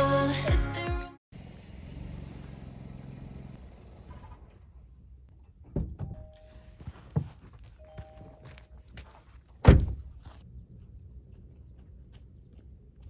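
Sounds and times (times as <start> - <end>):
car door shutting: 9.6 - 10.1.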